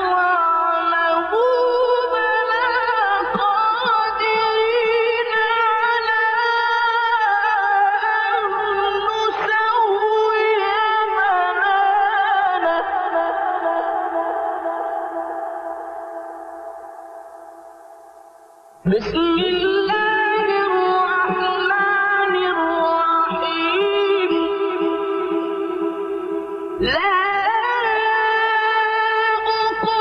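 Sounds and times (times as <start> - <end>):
man chanting melodically: 18.8 - 26.2.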